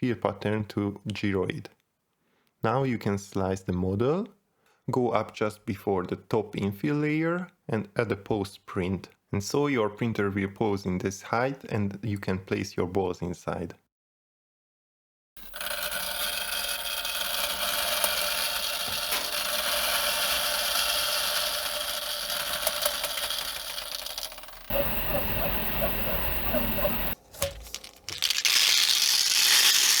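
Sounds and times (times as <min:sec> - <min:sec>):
printer motors whining: 0:17.0 - 0:27.2
rattling clicks: 0:17.2 - 0:28.1
balls pouring through rainstick: 0:27.4 - 0:30.0.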